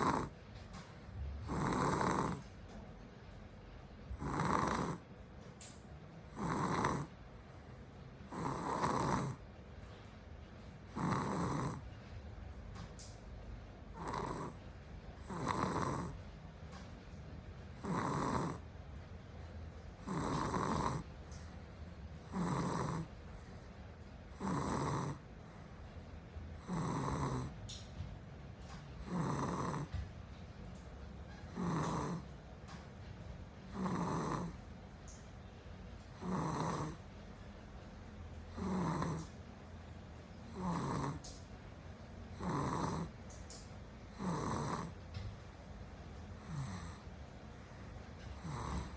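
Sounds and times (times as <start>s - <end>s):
child snoring: 0.0s - 0.4s, 1.4s - 2.5s, 4.2s - 5.0s, 6.3s - 7.2s, 8.3s - 9.4s, 10.9s - 11.8s, 14.0s - 14.6s, 15.2s - 16.2s, 17.8s - 18.6s, 20.0s - 21.1s, 22.2s - 23.1s, 24.3s - 25.2s, 26.6s - 27.5s, 29.0s - 30.0s, 31.5s - 32.3s, 33.7s - 34.6s, 36.2s - 37.0s, 38.5s - 39.3s, 40.5s - 41.3s, 42.4s - 43.2s, 44.1s - 45.0s, 46.4s - 47.1s, 48.3s - 48.9s
quiet breathing: 0.0s - 2.8s, 19.8s - 27.8s, 38.4s - 39.4s, 46.3s - 48.9s.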